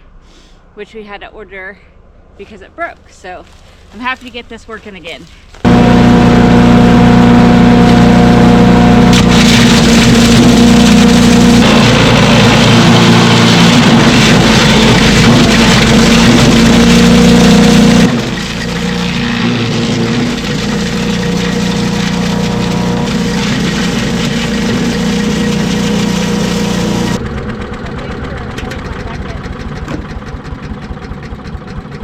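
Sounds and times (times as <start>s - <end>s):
wood chipper engine: 5.5s - 32.0s.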